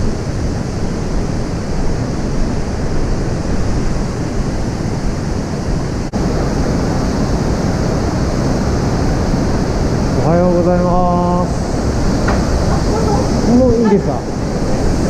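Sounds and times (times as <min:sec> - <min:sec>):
waterfall rushing: 0:04.2 - 0:15.0.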